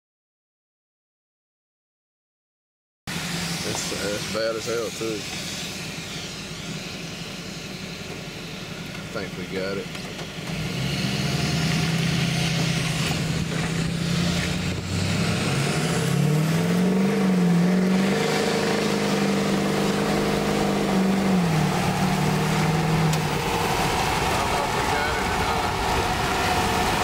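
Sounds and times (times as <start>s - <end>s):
diesel truck engine accelerating: 3.1s - 27.0s
gear shift: 21.9s - 25.0s.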